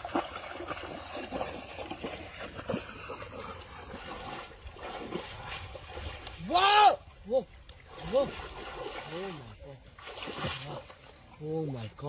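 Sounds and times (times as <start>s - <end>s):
water splashing and trickling: 0.0s - 12.0s.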